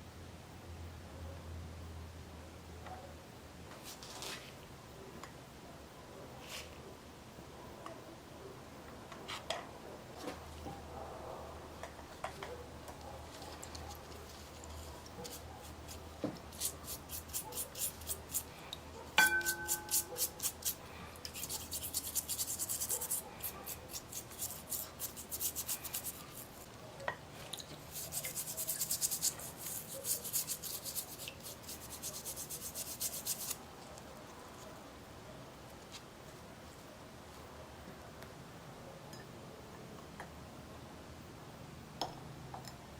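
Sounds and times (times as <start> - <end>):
scrubbing strokes on metal: 13.4 - 26.7, 27.6 - 33.6
ringing metallic clink: 19.2 - 20.0.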